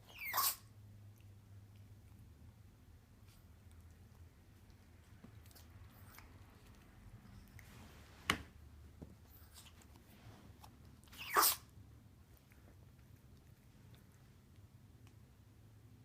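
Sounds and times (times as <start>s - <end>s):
small dog sneezing: 0.1s - 0.7s, 11.1s - 11.7s.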